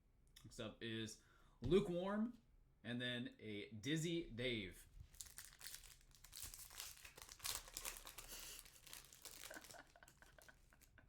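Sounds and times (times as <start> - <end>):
foil wrapper crinkling: 5.1 - 10.9.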